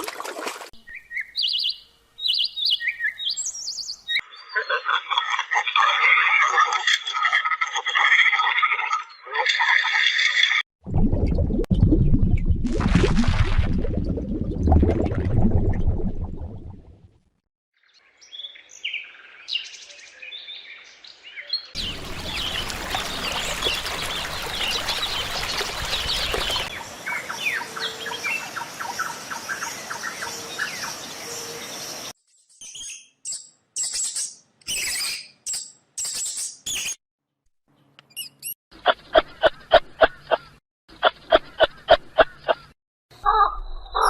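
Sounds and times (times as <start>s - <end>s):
birds chirping: 0.8s - 5.0s, 18.2s - 37.0s.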